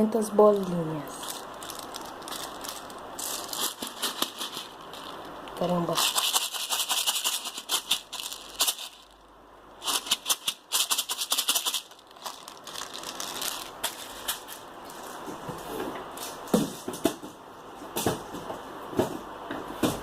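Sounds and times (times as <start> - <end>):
plastic pellets rattling in container: 0.4 - 15.3.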